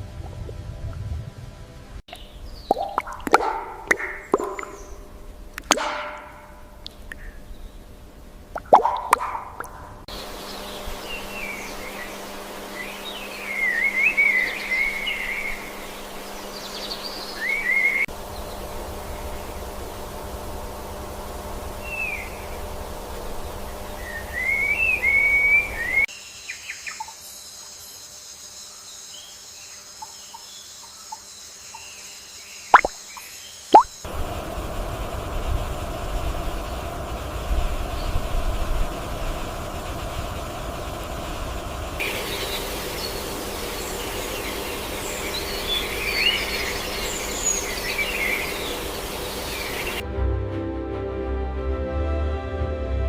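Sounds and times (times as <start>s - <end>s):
steady noisy background: 0.0s - 26.1s, 33.8s - 50.0s
whistled bird calls: 2.1s - 5.2s, 5.9s - 7.9s, 8.9s - 19.5s, 21.8s - 22.7s, 23.4s - 27.2s, 42.0s - 50.0s
steady high buzz: 9.9s - 26.1s, 32.8s - 50.0s
steady rushing background: 34.1s - 50.0s.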